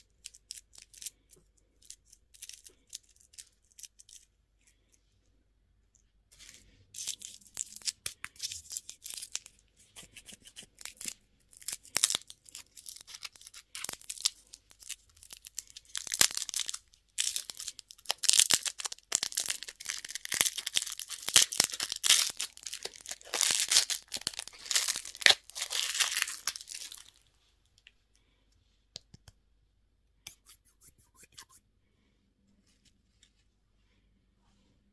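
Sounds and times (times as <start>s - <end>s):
candy wrapper tearing and crinkling: 0.0s - 4.3s, 6.4s - 27.2s.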